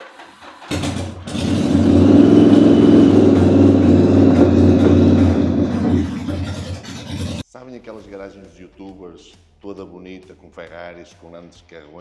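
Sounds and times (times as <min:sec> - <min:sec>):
motorcycle engine running: 0:00.7 - 0:07.4.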